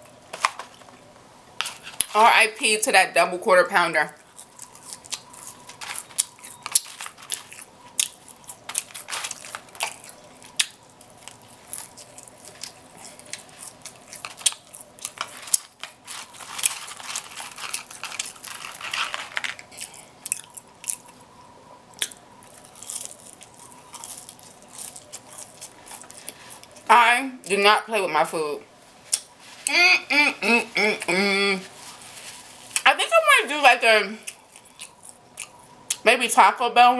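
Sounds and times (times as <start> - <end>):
person chewing and lip smacking: 4.2 - 19.0, 19.6 - 21.3, 21.9 - 26.9, 34.2 - 36.0.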